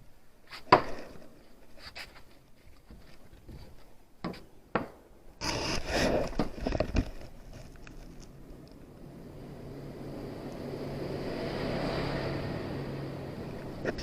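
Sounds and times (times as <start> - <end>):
scraping and rustling: 0.4 - 4.0, 5.4 - 8.4, 13.5 - 14.0.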